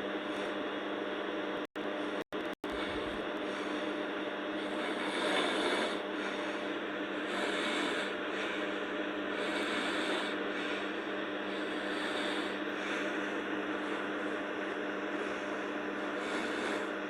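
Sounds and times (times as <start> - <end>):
steady hum: 0.0 - 17.0
girl snoring: 4.5 - 17.0.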